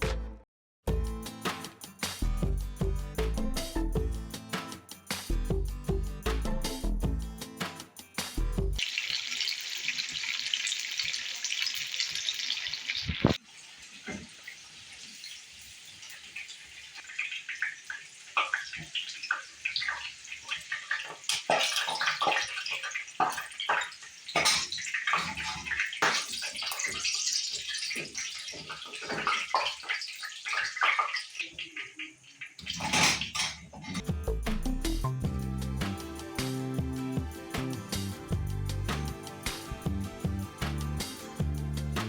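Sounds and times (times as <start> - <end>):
food frying in hot oil: 8.8 - 33.3.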